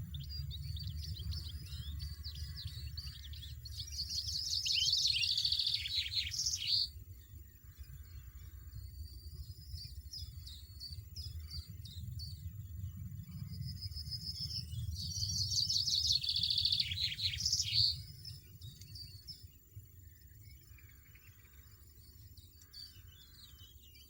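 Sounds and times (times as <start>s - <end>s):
steady low rumble: 0.0s - 4.3s, 8.8s - 15.8s
goldfinch twittering and trilling: 0.0s - 24.0s.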